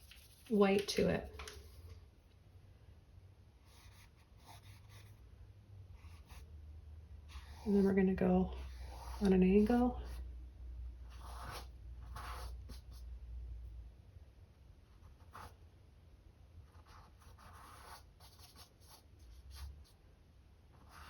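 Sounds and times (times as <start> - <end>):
paintbrush strokes on canvas: 0.0 - 1.8.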